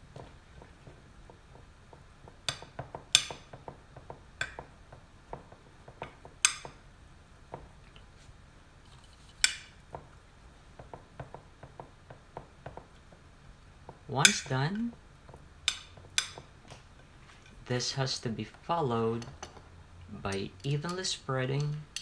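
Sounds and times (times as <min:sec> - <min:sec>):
utensil tapping a baking dish: 0:00.1 - 0:06.9, 0:10.7 - 0:16.9, 0:19.1 - 0:22.0.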